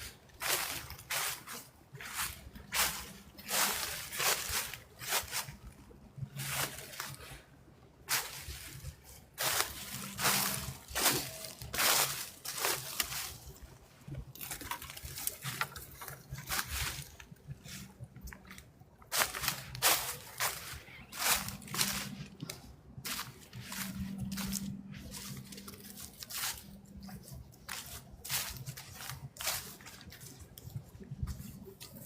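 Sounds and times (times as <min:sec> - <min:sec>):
footsteps crunching dry leaves: 0:00.0 - 0:07.4, 0:08.1 - 0:32.0.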